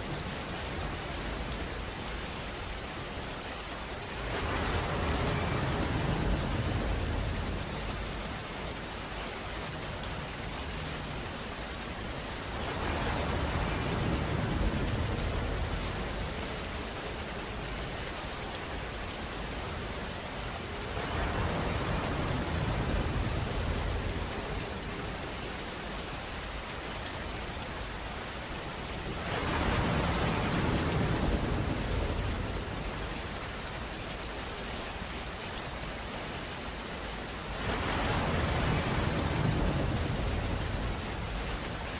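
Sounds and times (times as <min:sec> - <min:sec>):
steady rain hiss: 0:00.0 - 0:41.9.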